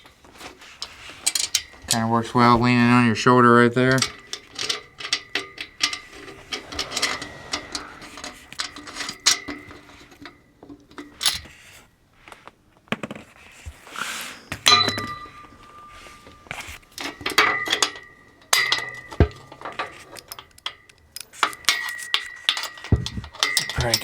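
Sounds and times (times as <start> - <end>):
metal parts clinking: 0.6 - 2.1, 3.8 - 11.5, 16.5 - 24.0.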